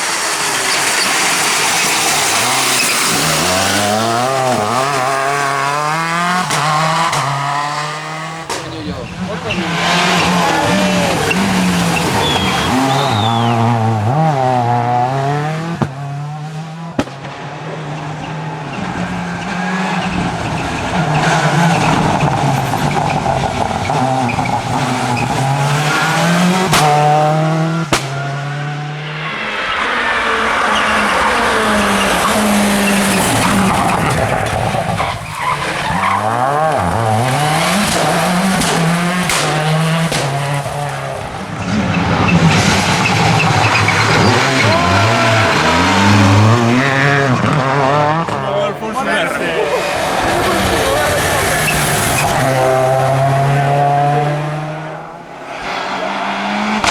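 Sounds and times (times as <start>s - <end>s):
sharp engine cracks: 0.0s - 13.6s, 20.1s - 49.2s
rally car engine revving: 0.0s - 56.9s.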